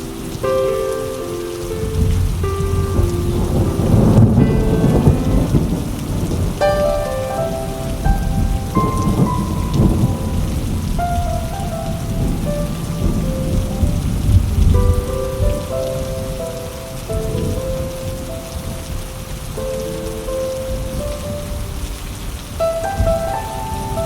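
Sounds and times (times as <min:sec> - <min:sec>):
soft background music: 0:00.0 - 0:24.0
steady rain: 0:00.0 - 0:24.0
thunder rolling: 0:01.8 - 0:24.0.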